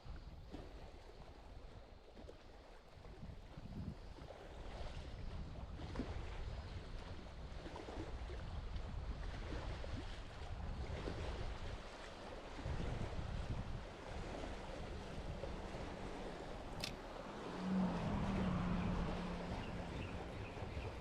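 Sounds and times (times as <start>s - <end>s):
wind rumbling on microphone: 0.0s - 21.0s
sea waves washing ashore: 2.7s - 21.0s.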